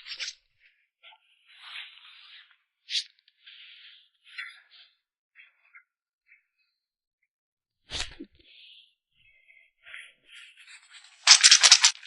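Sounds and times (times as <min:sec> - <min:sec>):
suction cup popping off: 0:11.3 - 0:12.0.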